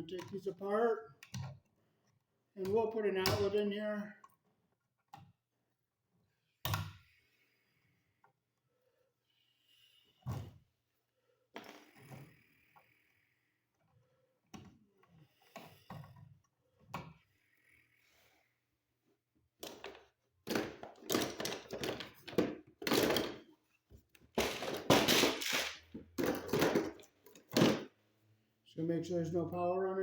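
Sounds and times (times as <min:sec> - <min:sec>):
wires and tools rattling: 0:19.6 - 0:28.0.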